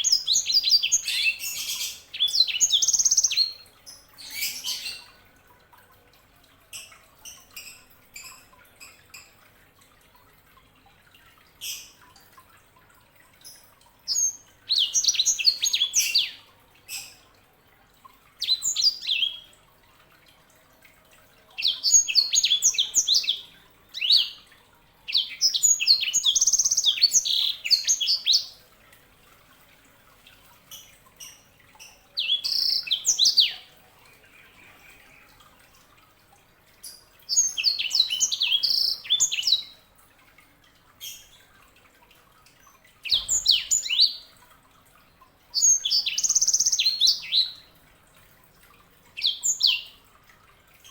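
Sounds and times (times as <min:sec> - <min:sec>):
canary chirping and warbling: 0:00.0 - 0:05.2, 0:13.5 - 0:17.2, 0:21.6 - 0:24.4, 0:25.1 - 0:28.6, 0:30.7 - 0:35.4, 0:36.8 - 0:39.8, 0:43.0 - 0:44.3, 0:45.6 - 0:47.7.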